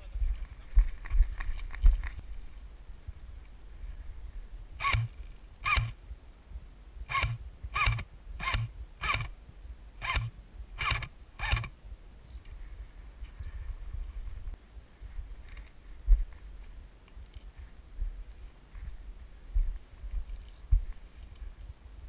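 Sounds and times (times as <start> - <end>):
airsoft gun shots: 4.8 - 6.0, 7.1 - 9.3.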